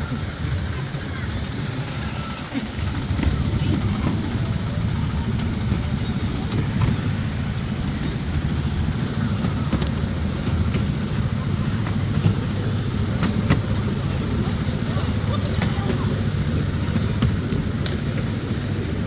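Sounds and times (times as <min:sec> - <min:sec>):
ride-on train rumbling on track: 0:00.0 - 0:19.0
faint clicks: 0:17.2 - 0:18.3.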